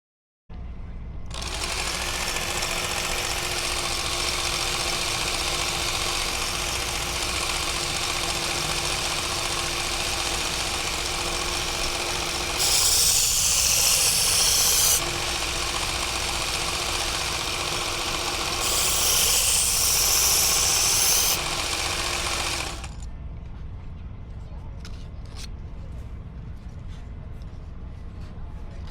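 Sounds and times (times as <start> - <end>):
blade grinding hiss: 1.3 - 23.0
knife sharpener motor running: 1.3 - 23.0.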